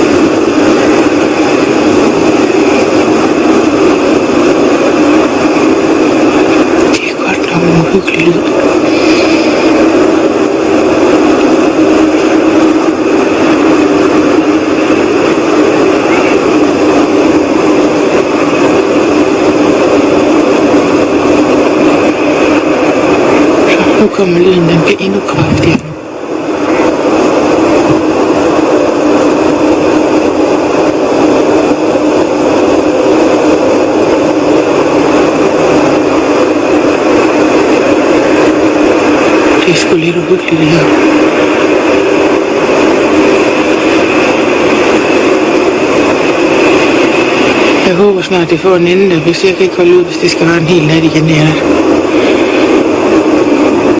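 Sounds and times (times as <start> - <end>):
whooshing rumble in the sky: 0.0 - 53.9.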